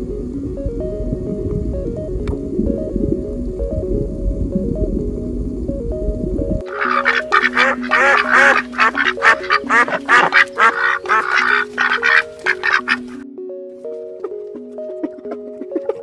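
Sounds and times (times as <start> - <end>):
background music: 0.0 - 16.0
ducks quacking: 6.6 - 13.2.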